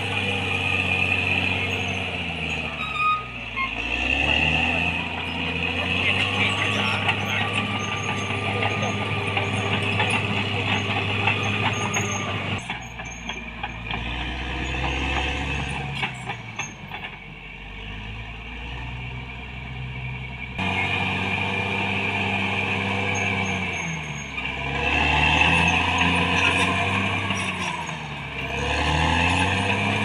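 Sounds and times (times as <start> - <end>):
bulldozer diesel engine running: 0.0 - 30.0.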